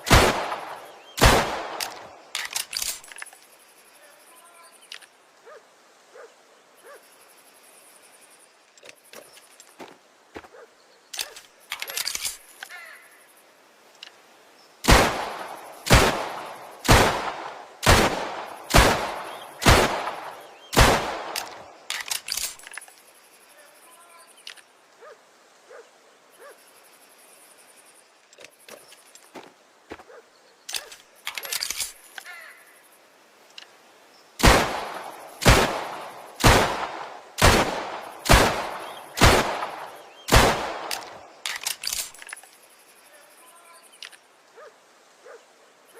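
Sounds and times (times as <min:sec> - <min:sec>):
pistol shots ringing: 0:00.1 - 0:03.0, 0:14.9 - 0:22.6, 0:34.4 - 0:41.9.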